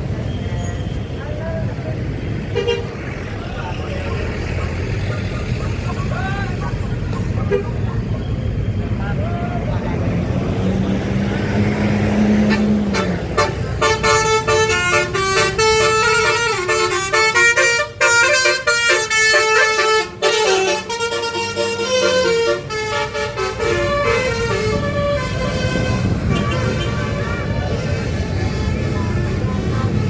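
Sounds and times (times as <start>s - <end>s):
multi-note bus horn melody: 2.5s - 3.0s, 12.1s - 30.0s.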